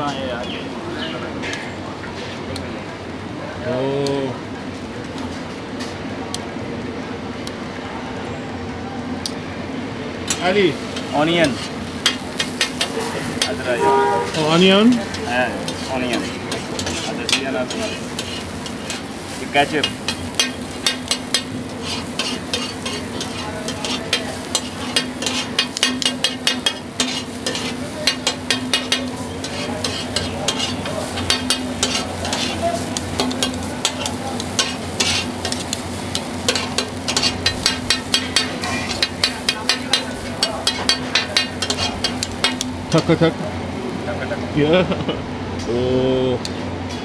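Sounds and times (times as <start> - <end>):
food sizzling on griddle: 10.2 - 44.9
metal spatula scraping griddle: 10.3 - 43.2.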